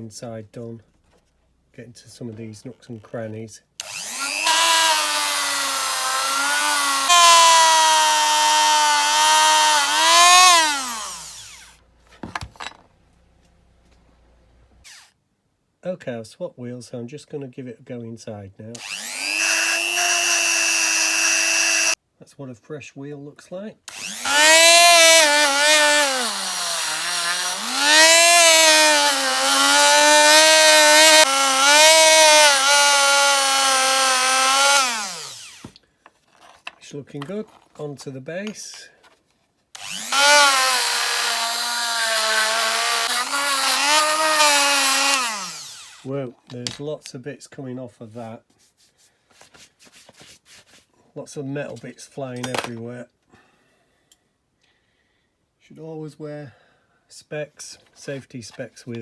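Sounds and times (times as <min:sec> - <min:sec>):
rotary tool whining: 0:03.8 - 0:11.8, 0:14.8 - 0:15.1, 0:18.8 - 0:22.0, 0:23.9 - 0:35.8, 0:39.8 - 0:46.1.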